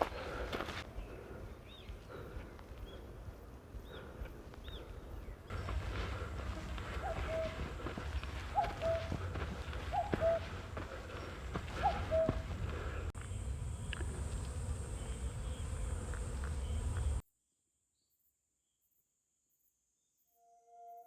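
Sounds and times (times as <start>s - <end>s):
high insect drone: 10.4s - 17.2s.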